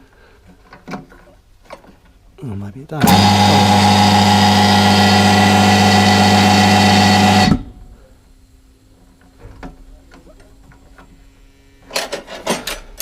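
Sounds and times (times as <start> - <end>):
air compressor humming: 3.0 - 8.1.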